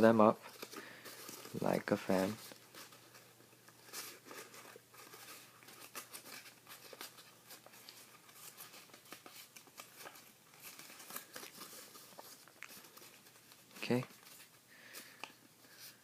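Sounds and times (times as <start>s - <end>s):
paper rustling and crinkling: 0.0s - 16.0s.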